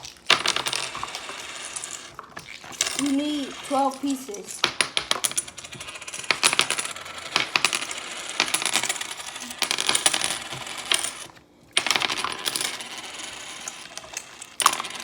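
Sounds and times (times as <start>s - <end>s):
checkers pieces clicking: 2.8s - 11.2s.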